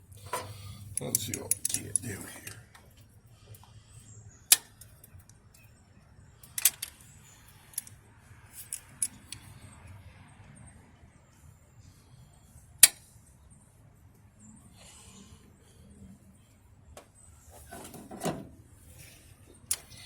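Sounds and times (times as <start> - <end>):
hand tools clicking on metal: 0.3 - 2.6.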